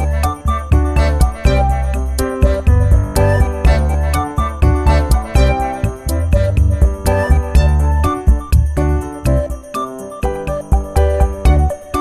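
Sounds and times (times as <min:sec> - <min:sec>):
deep bass: 0:00.0 - 0:09.6
keyboard melody: 0:00.0 - 0:12.0.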